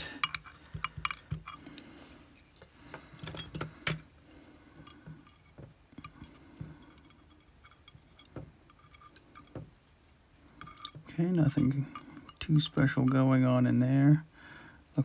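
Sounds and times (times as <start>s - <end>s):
small metal lock parts clinking: 0.0s - 4.1s.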